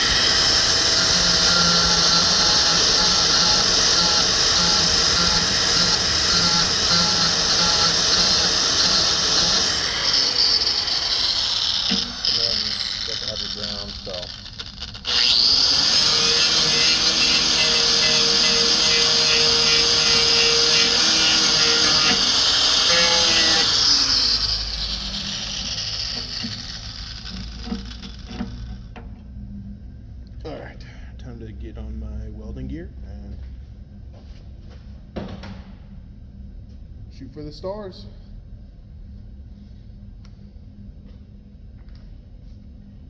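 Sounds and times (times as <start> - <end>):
grinder whirring on metal: 0.0 - 28.9
power tool whining: 0.0 - 29.0.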